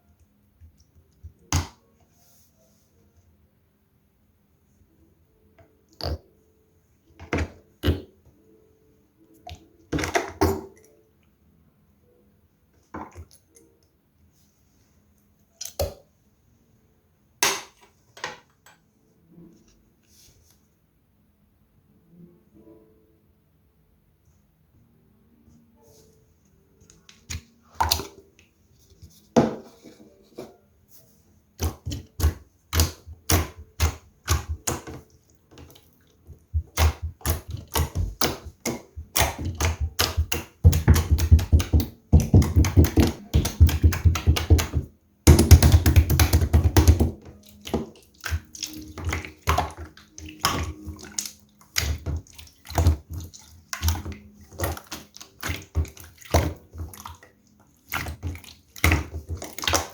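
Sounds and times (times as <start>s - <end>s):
slime squelching: 15.5s - 16.1s, 26.8s - 30.2s, 31.6s - 59.9s.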